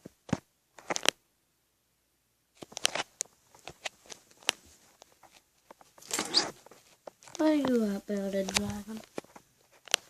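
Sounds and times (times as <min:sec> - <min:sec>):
faint rustling: 0:02.5 - 0:10.0.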